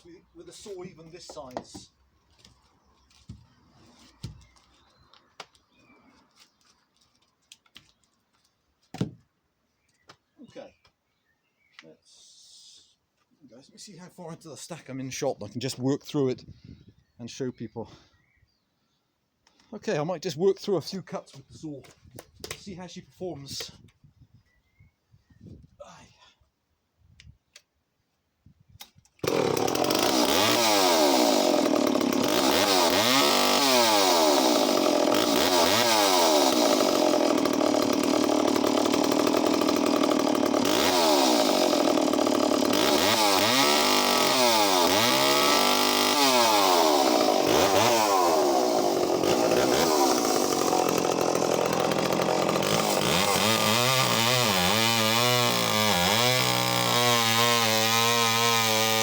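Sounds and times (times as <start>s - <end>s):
chainsaw cutting logs: 0.0s - 1.9s, 28.8s - 59.0s.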